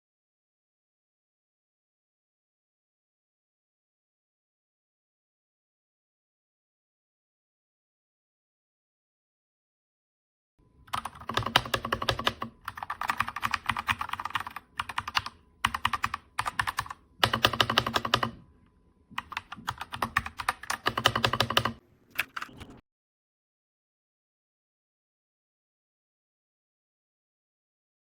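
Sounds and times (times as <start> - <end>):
mechanical keyboard typing: 10.9 - 18.4, 19.1 - 22.8.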